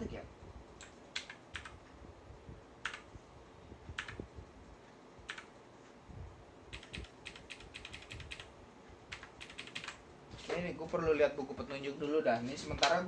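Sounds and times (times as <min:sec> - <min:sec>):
mechanical keyboard key presses: 0:00.8 - 0:01.8, 0:02.8 - 0:03.1, 0:04.0 - 0:04.2, 0:06.7 - 0:08.5, 0:09.1 - 0:10.0.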